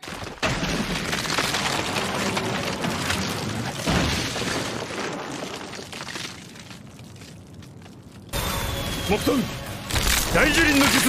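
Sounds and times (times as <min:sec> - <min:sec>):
wood cracking and rumbling: 0:00.0 - 0:08.4.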